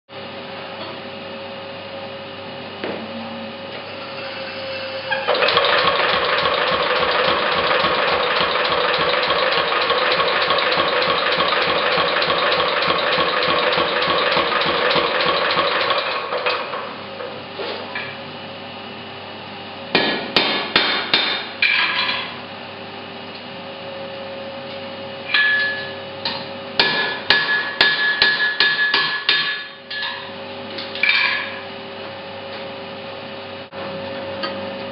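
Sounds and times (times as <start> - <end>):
machine humming: 1.5 - 18.6
power hammer pounding iron: 5.3 - 16.2, 19.9 - 21.5, 26.8 - 29.8
ringing hammer strikes on metal: 25.3 - 26.0, 26.8 - 29.8.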